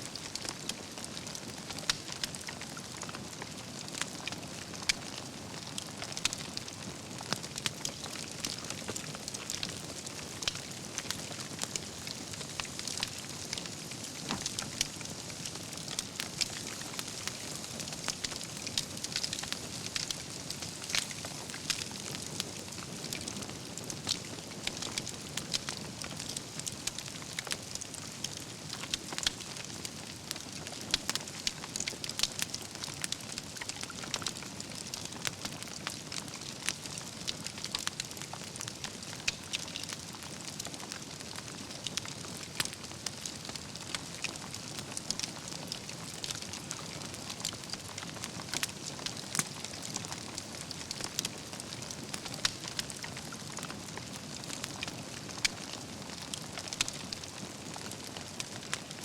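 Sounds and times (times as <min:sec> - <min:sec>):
campfire crackling: 0:00.1 - 0:59.0.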